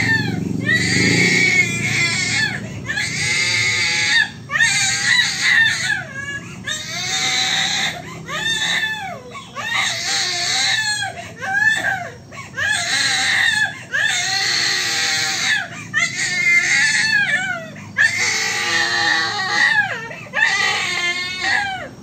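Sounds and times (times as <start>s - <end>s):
baby crying: 0.0s - 22.0s.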